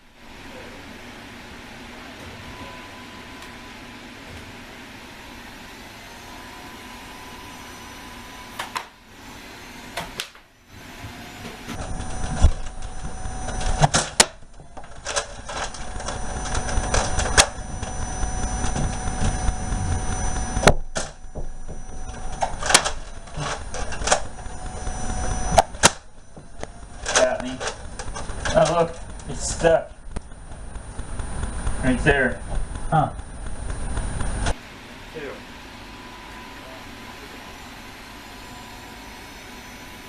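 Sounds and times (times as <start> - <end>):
steady hum: 0.0 - 40.0
toy blaster clicks and knocks: 22.4 - 24.3, 26.6 - 29.0.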